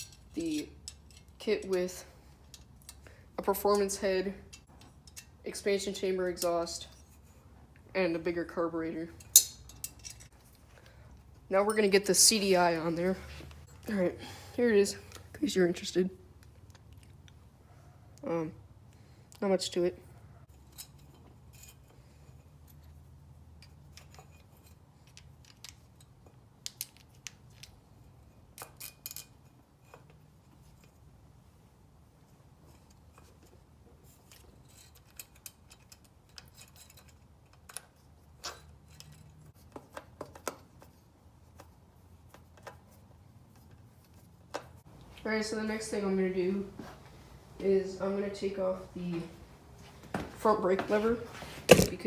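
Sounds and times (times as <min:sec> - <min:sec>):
low steady hum: 0:44.8 - 0:52.0.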